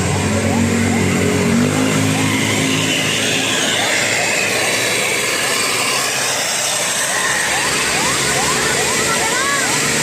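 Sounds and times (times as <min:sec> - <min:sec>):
low pitched tone: 0:00.0 - 0:09.4
bus passing: 0:00.0 - 0:10.0.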